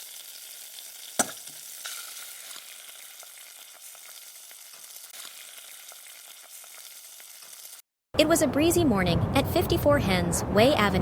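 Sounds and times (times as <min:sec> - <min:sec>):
crackling hiss with clicks: 0:01.1 - 0:07.8.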